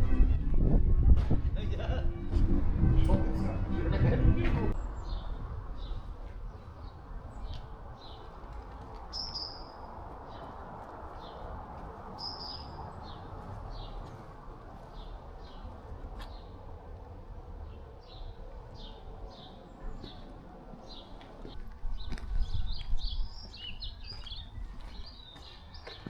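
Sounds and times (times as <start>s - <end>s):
steady low hum: 0.0s - 7.4s
small birds chirping: 4.7s - 16.8s, 17.4s - 26.0s.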